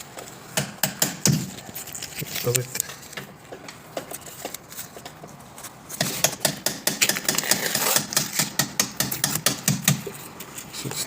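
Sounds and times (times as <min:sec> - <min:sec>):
clicks and knocks on window fittings: 0:00.6 - 0:01.7, 0:06.0 - 0:10.1.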